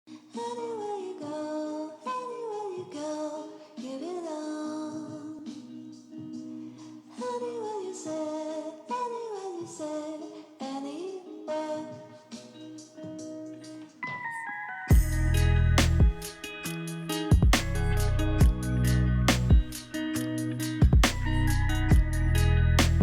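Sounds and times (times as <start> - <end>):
woman singing slow melody: 0.1 - 13.0.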